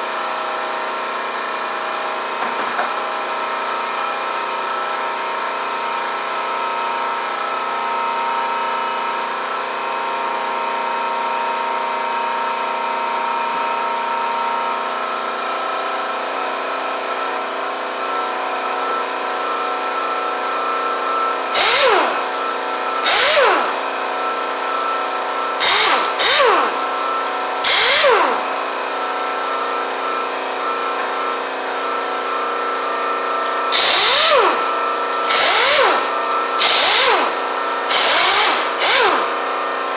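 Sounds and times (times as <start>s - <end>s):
air impact wrench bursts: 21.5s - 24.0s, 25.5s - 28.8s, 33.6s - 39.8s.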